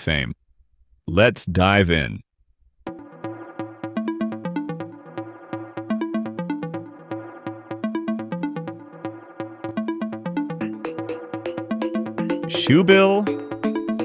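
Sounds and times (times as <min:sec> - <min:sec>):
electronic music with steady beat: 0:02.9 - 0:14.0.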